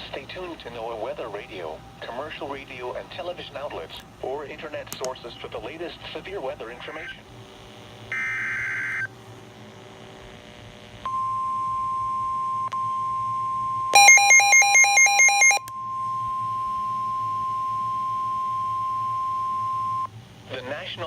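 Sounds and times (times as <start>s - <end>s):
screeching data tones: 8.1s - 9.1s, 13.9s - 15.6s
steady warning alarm tone: 8.1s - 9.1s, 11.1s - 20.1s
radio receiver alert beeps: 14.0s - 20.1s.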